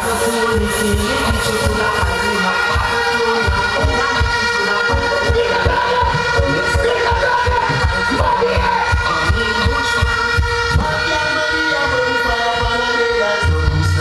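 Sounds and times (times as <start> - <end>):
kick drum beat: 0.0 - 11.0
heavy bass line: 0.0 - 14.0
music over sound system: 0.0 - 14.0.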